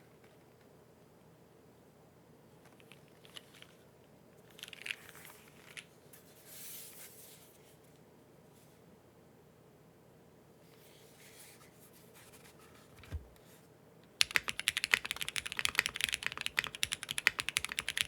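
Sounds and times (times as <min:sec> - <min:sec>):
soft rustle: 0:04.5 - 0:08.9, 0:10.6 - 0:13.7
mechanical keyboard keystrokes: 0:14.2 - 0:18.0.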